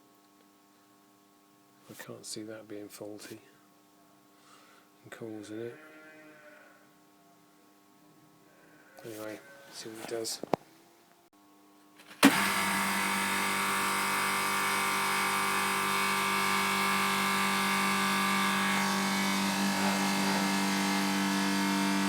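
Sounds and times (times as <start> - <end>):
refrigeration compressor humming: 12.0 - 22.0.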